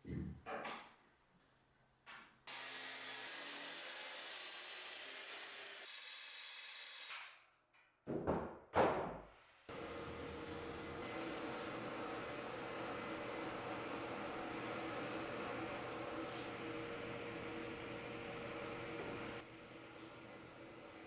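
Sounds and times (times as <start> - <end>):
power saw cutting wood: 2.5 - 7.1, 9.7 - 21.0.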